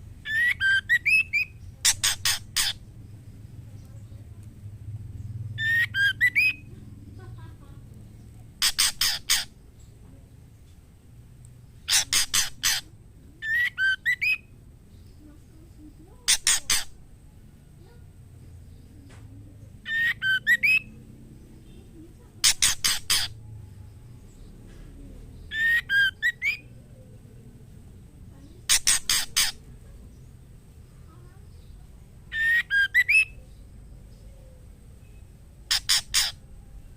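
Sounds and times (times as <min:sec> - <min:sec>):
bird harsh notes and whistled phrases: 0:00.2 - 0:02.8, 0:05.6 - 0:06.7, 0:08.6 - 0:09.5, 0:11.7 - 0:14.5, 0:16.2 - 0:17.0, 0:19.8 - 0:21.0, 0:25.4 - 0:26.8, 0:28.6 - 0:29.7, 0:31.6 - 0:33.5, 0:34.9 - 0:36.4.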